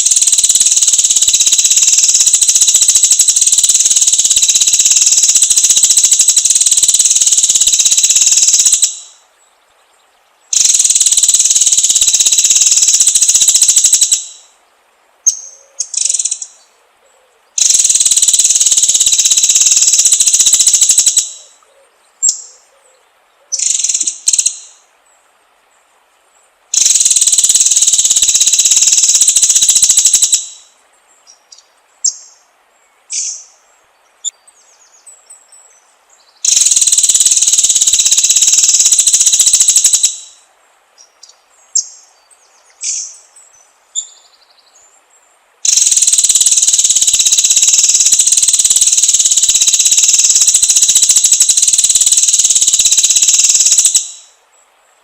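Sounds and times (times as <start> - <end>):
songbird chirping: 0.0 - 55.0
high-pitched buzzing trills: 45.7 - 54.4.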